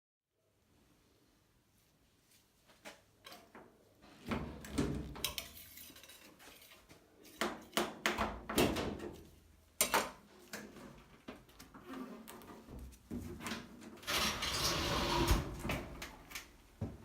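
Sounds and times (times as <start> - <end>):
clunks and scraping on dryer: 11.8 - 16.2.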